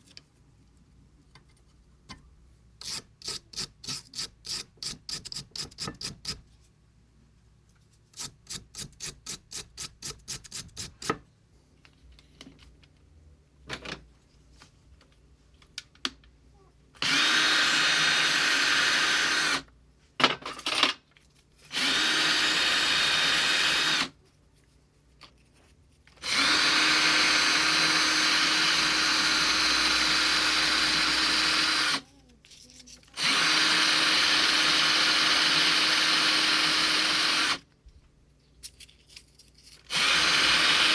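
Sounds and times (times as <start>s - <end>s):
power drill running: 17.0s - 19.6s, 21.7s - 24.1s, 26.2s - 32.0s, 33.2s - 37.6s, 39.9s - 40.9s.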